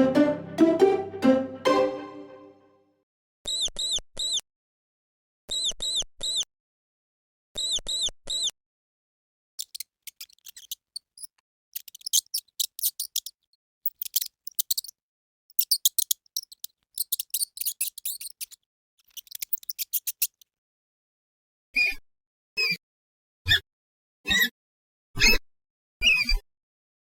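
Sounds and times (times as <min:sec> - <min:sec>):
mouse squeaking: 0:09.6 - 0:20.4.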